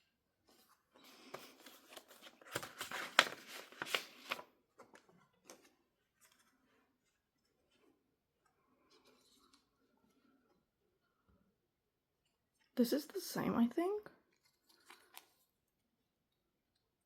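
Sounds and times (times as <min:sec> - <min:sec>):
rustling by hand: 0:00.4 - 0:10.6.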